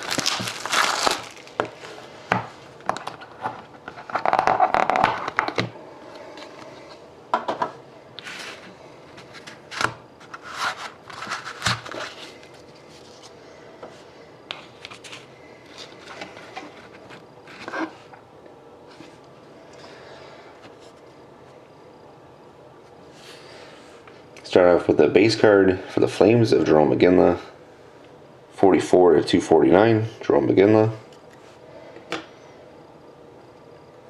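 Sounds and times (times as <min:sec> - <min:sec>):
packaging rustling and crinkling: 0:00.0 - 0:02.1, 0:08.2 - 0:13.4, 0:14.6 - 0:18.0.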